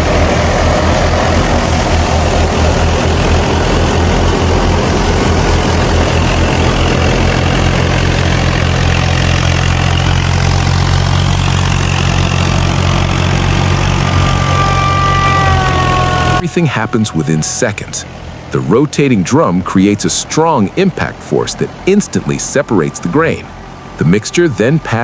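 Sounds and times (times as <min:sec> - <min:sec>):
threshing machinery rush: 0:00.0 - 0:25.0
tractor diesel engine hum: 0:00.0 - 0:25.0.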